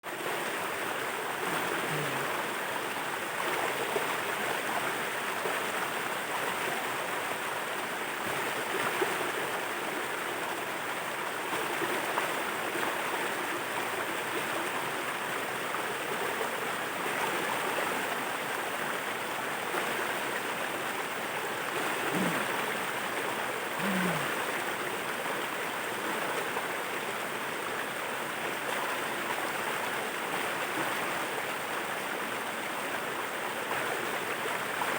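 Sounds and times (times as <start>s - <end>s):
waterfall roaring: 21.8s - 24.6s.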